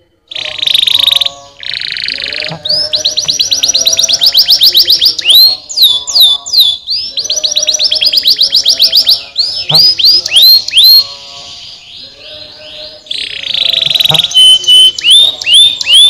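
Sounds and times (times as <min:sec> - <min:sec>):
canary singing trills: 0:00.0 - 0:16.0.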